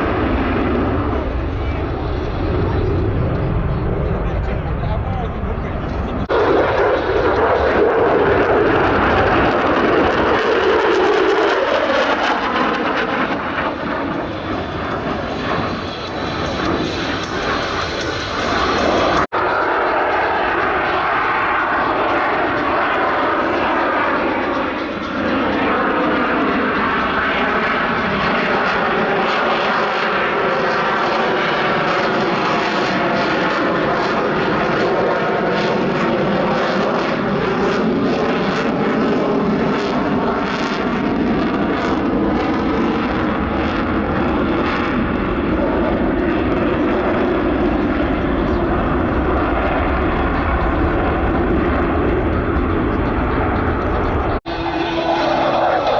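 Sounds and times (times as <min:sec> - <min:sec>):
jet flying past: 0:00.0 - 0:55.9.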